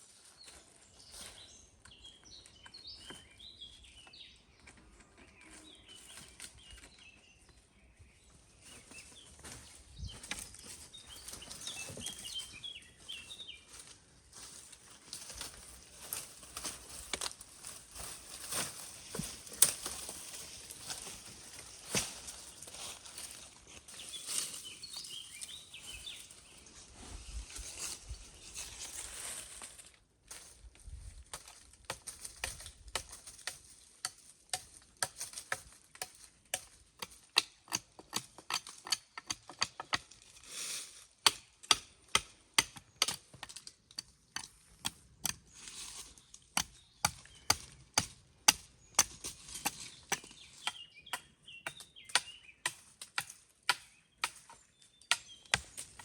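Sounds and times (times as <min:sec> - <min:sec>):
rustling: 0:14.4 - 0:25.2
axe chopping dry wood: 0:31.9 - 0:40.1, 0:41.2 - 0:45.4, 0:46.5 - 0:56.0.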